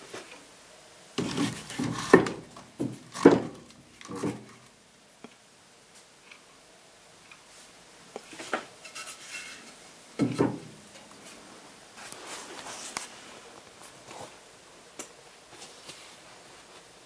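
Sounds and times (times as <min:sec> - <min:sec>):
logs knocking and clattering: 0:01.2 - 0:04.6, 0:10.2 - 0:10.8
wood scraping: 0:01.2 - 0:04.7.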